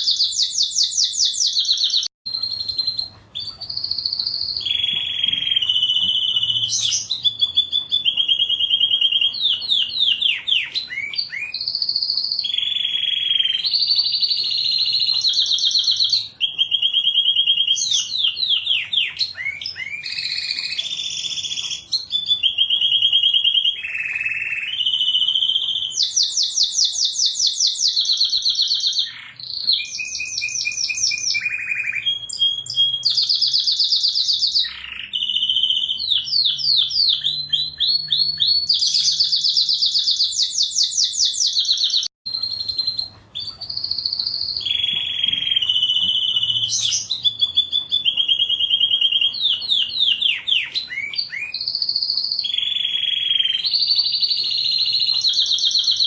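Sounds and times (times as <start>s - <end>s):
canary singing trills: 0.0s - 56.0s.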